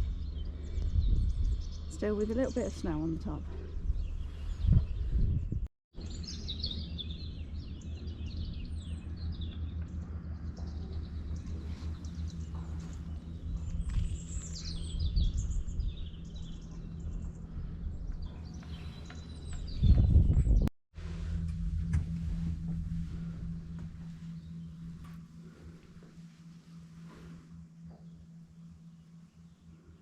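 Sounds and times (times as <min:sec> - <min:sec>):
low background rumble: 0:00.0 - 0:30.0
songbirds chirping and singing: 0:06.0 - 0:20.6.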